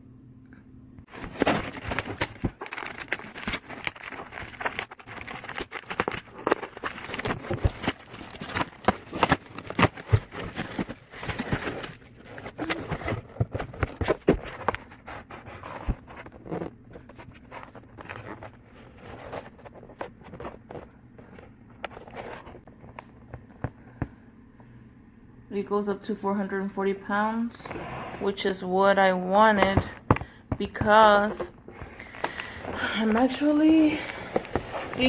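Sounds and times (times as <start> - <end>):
package being unpacked: 1.1 - 23.2, 29.6 - 35.0.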